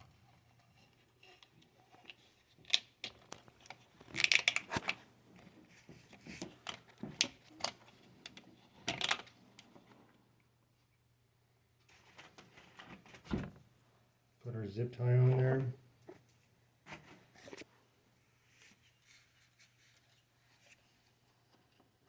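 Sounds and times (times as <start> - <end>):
cable and tubing clicking and rustling: 0.0 - 10.2.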